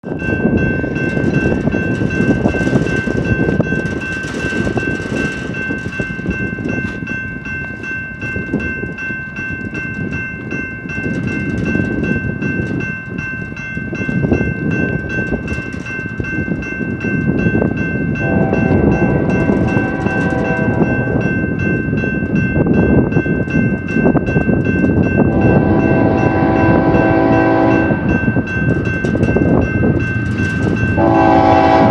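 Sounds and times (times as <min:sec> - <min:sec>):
freight train rumbling past: 0:00.0 - 0:31.9
locomotive horn chord: 0:18.2 - 0:20.9, 0:25.4 - 0:28.0, 0:31.0 - 0:31.9.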